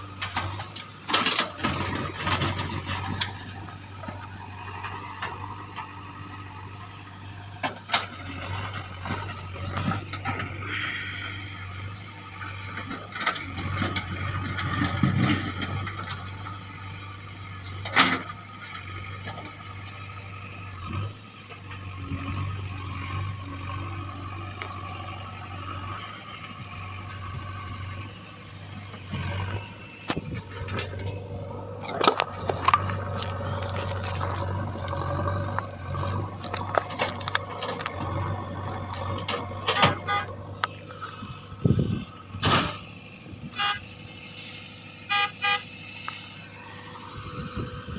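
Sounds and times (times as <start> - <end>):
diesel engine running: 0.0 - 47.9.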